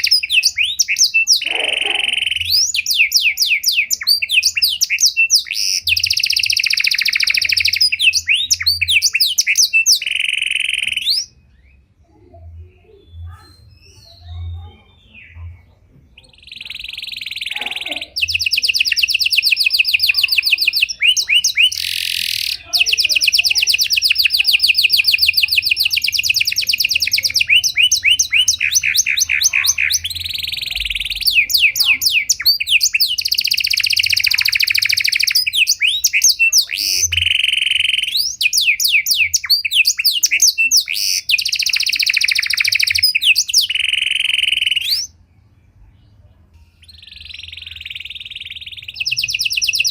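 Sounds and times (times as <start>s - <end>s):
canary singing trills: 0.0s - 49.9s.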